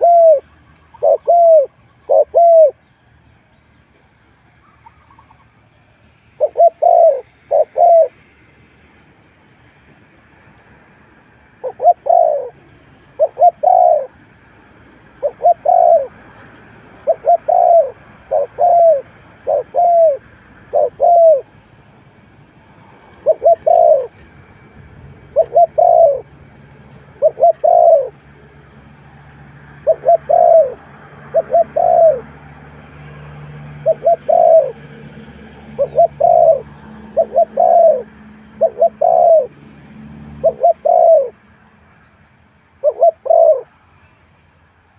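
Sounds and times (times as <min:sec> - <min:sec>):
dove cooing: 0:00.0 - 0:02.8, 0:06.4 - 0:08.2, 0:11.6 - 0:14.3, 0:15.1 - 0:16.3, 0:16.9 - 0:21.6, 0:23.1 - 0:24.2, 0:25.2 - 0:28.3, 0:29.6 - 0:32.5, 0:33.6 - 0:39.6, 0:40.2 - 0:41.4, 0:42.8 - 0:43.7.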